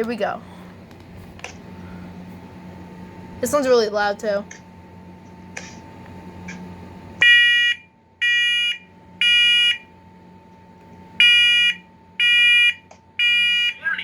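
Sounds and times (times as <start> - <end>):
shrill smoke alarm beeps: 7.2 - 9.9, 11.2 - 13.8.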